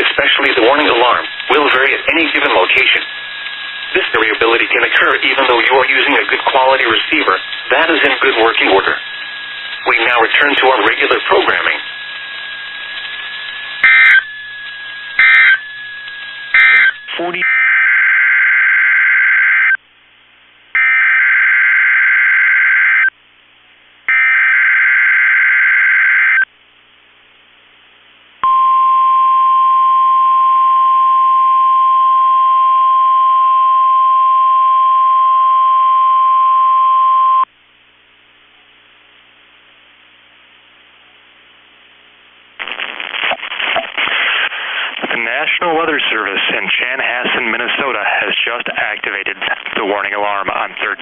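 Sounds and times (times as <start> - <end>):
announcer speaking: 0.0 - 3.1, 3.9 - 9.0, 9.8 - 11.8, 16.6 - 17.5, 45.1 - 51.0
faint radio hiss: 0.0 - 17.4, 26.5 - 28.4, 37.5 - 51.0
digital data bursts: 0.0 - 17.8
steady warning alarm tone: 0.0 - 19.8, 20.8 - 23.1, 24.1 - 26.5.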